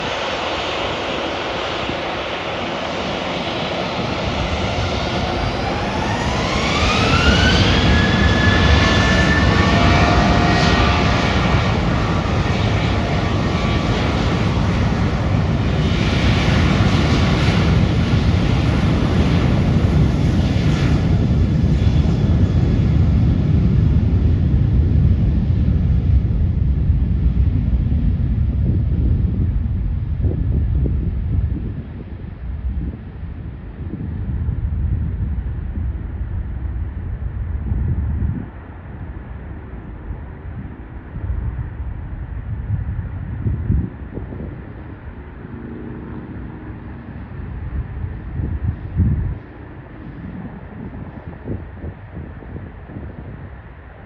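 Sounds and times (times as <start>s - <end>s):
jet engine whine: 0.0s - 54.0s
loud steady jet rumble: 0.0s - 54.0s.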